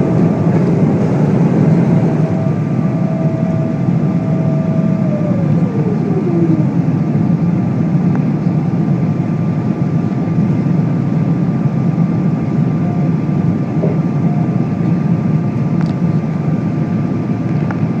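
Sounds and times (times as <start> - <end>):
falling tone: 0.0 - 7.4
rushing air: 0.0 - 8.0
airplane cabin engine drone: 0.0 - 18.0
thin steady whine: 0.0 - 18.0.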